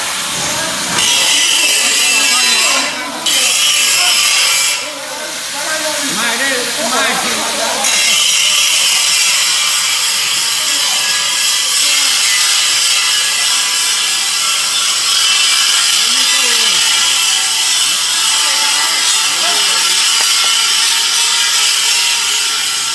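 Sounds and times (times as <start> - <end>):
power grinder grinding stone: 0.0 - 22.9.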